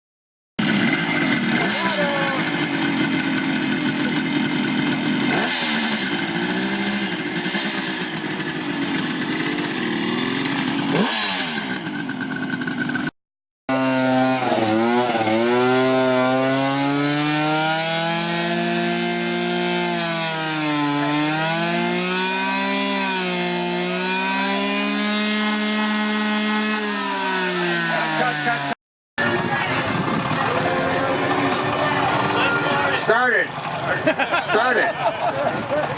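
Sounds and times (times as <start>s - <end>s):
motorcycle engines revving: 0.6s - 13.1s, 13.7s - 35.9s.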